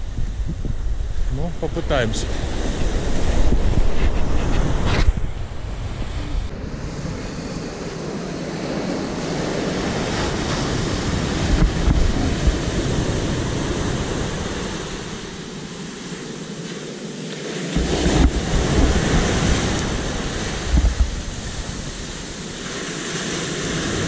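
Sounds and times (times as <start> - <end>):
wind buffeting microphone: 0.0 - 16.5, 17.7 - 24.0
stormy surf breaking: 0.0 - 24.0.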